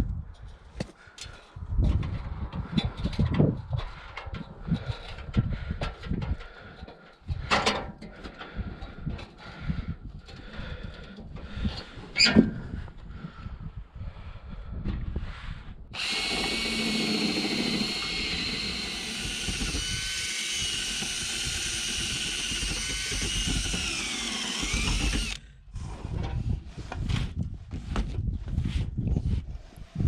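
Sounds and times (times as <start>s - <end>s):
power drill boring: 16.0s - 25.4s.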